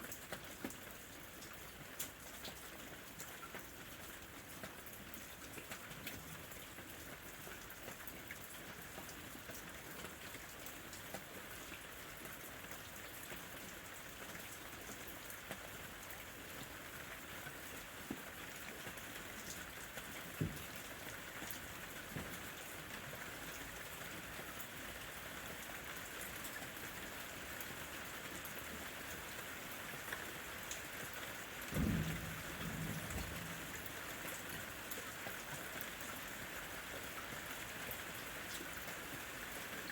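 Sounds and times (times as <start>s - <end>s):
steady rain falling: 0.0s - 39.9s
low rumble of thunder: 31.7s - 34.7s.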